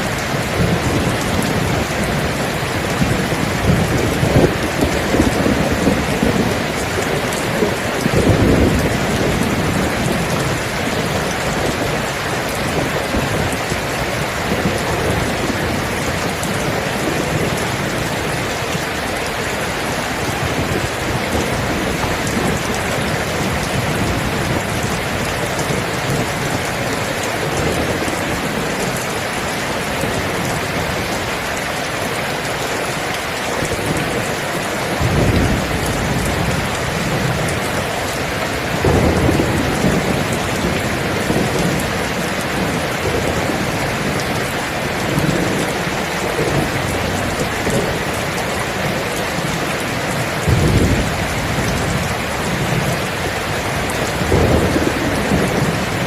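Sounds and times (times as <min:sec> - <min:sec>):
thunder rolling: 0:00.0 - 0:13.7, 0:38.6 - 0:44.4, 0:50.1 - 0:53.0, 0:53.7 - 0:56.0
heavy rain: 0:00.0 - 0:56.0.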